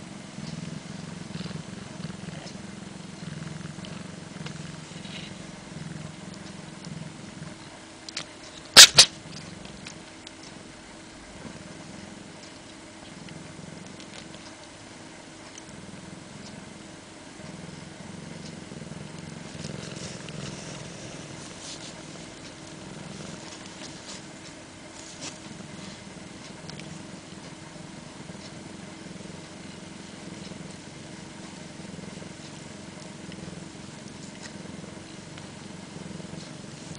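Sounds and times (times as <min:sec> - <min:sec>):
cat purring: 0:00.0 - 0:36.9
cat sneezing: 0:08.7 - 0:09.2.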